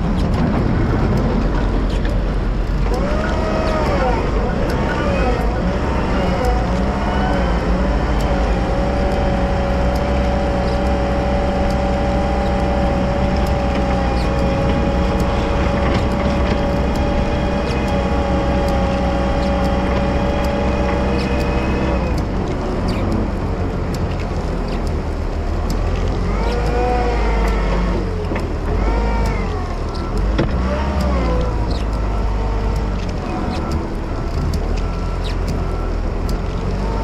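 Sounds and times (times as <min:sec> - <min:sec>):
engine whine: 0:00.0 - 0:37.0
light clicks: 0:00.0 - 0:37.0
wheel loader diesel engine: 0:00.0 - 0:37.0.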